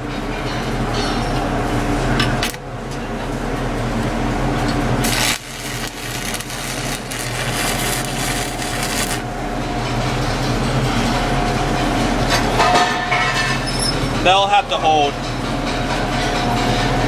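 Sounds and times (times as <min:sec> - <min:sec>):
electrical hum: 0:04.4 - 0:10.2
welding arc crackling: 0:05.0 - 0:09.5.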